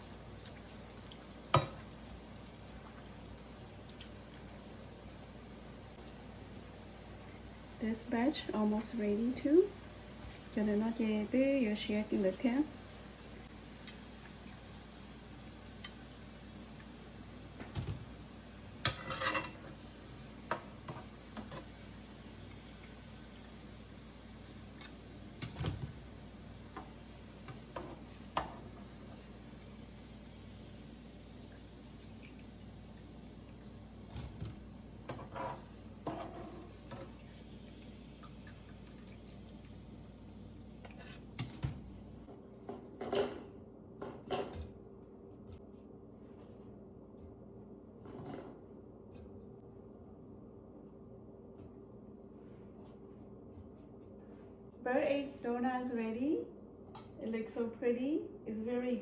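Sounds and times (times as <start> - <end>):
oil sizzling: 0.0 - 42.3
faint steady hiss: 0.0 - 42.6
metal utensils clinking on dishes: 18.8 - 19.8.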